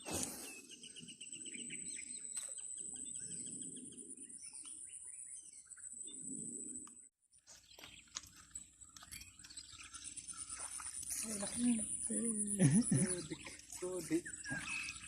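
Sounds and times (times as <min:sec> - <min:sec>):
bird trilling chirps: 0:07.7 - 0:15.0.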